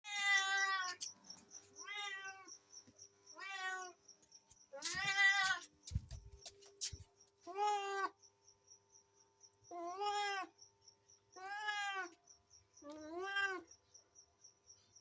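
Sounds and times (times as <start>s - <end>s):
cat meowing: 3.4s - 4.0s.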